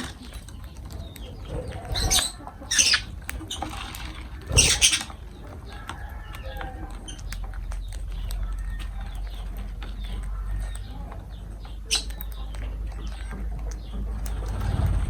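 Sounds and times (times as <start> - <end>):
lovebirds squawking: 0.0 - 14.8
small clicks and taps: 5.4 - 15.0.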